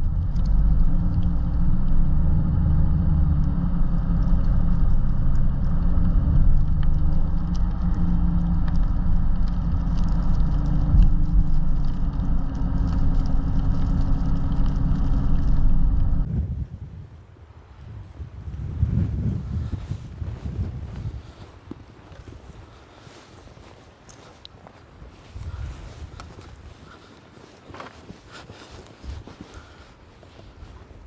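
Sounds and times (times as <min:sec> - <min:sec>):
car engine and tyres rumbling: 0:00.0 - 0:31.0
faint ticks: 0:21.3 - 0:31.0.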